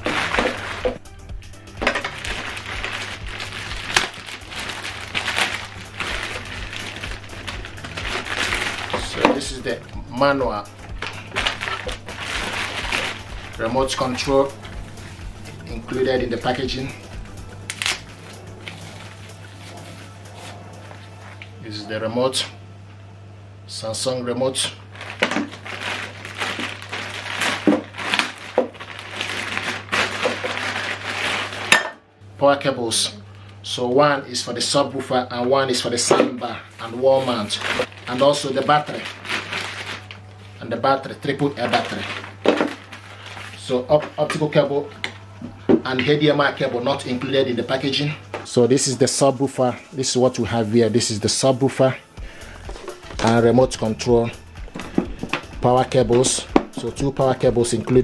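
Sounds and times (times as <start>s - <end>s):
box packaging rustling: 0.0s - 1.1s, 1.7s - 21.4s, 25.0s - 31.8s, 37.1s - 40.8s, 41.4s - 44.6s, 52.2s - 58.0s
quiet background music: 0.0s - 58.0s.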